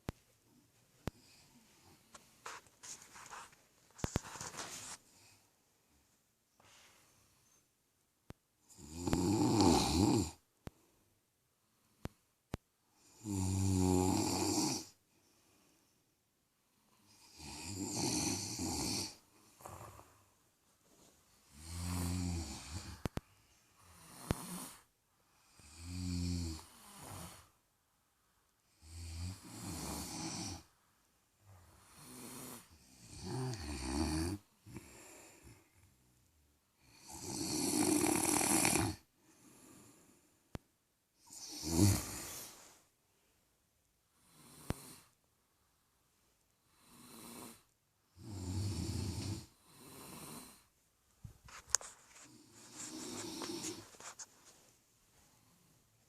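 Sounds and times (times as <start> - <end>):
rumbling buzzing snore: 8.7 - 10.4, 37.0 - 39.0
breathy hissy breaths: 34.6 - 35.8, 41.2 - 42.9.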